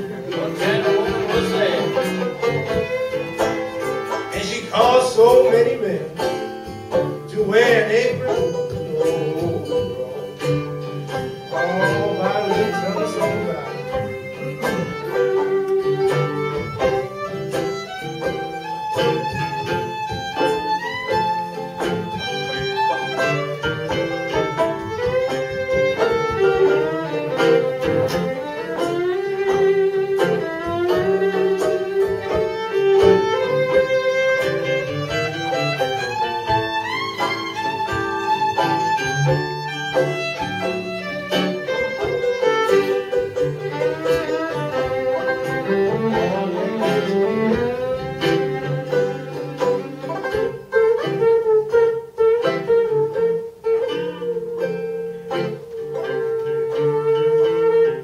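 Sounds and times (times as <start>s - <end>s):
clicking rhythmic beat: 0.0s - 57.9s
fiddle melody: 0.0s - 58.0s
strummed guitar: 0.0s - 58.0s.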